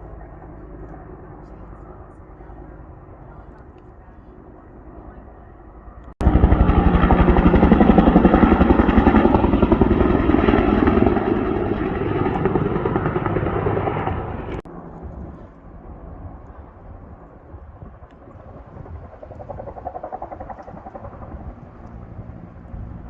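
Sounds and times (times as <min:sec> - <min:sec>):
helicopter rotor chop: 0:06.2 - 0:23.0.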